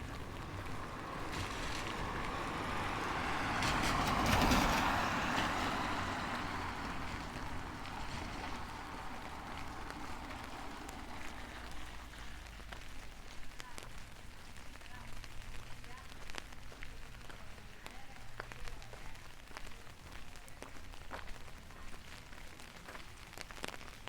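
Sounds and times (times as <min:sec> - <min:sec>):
steady rain: 0:00.0 - 0:24.0
tyres hissing on wet road: 0:00.0 - 0:24.0.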